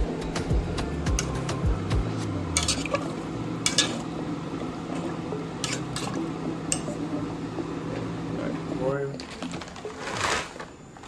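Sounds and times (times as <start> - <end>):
steady low hum: 0.0 - 9.2
metal utensil clinking against pot: 2.6 - 4.1, 5.6 - 7.0.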